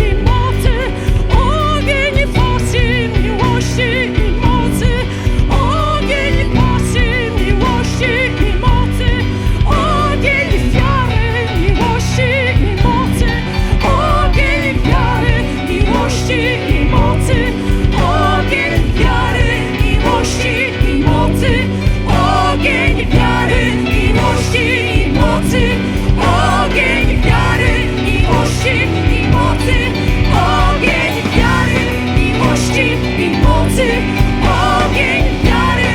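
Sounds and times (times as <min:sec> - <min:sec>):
person singing: 0:00.0 - 0:35.9
worship band playing: 0:00.0 - 0:35.9.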